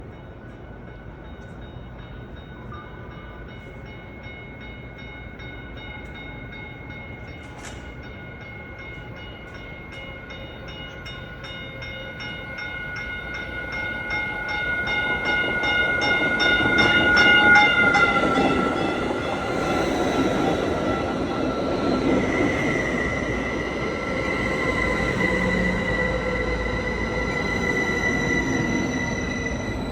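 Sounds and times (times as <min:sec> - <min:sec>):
train passing: 0:00.0 - 0:29.9
regular ringing bell: 0:00.9 - 0:19.9.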